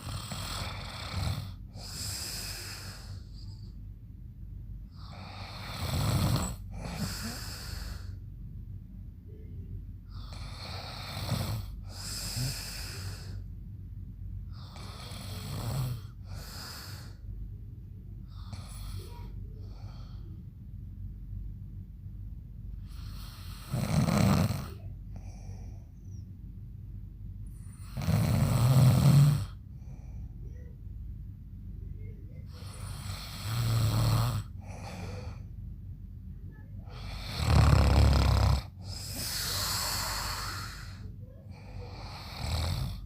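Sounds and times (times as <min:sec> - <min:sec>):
man snoring loudly: 0:00.0 - 0:03.1, 0:05.0 - 0:07.7, 0:10.2 - 0:13.4, 0:14.6 - 0:17.2, 0:23.0 - 0:24.8, 0:27.8 - 0:29.6, 0:32.7 - 0:35.0, 0:36.9 - 0:41.1, 0:41.9 - 0:43.0.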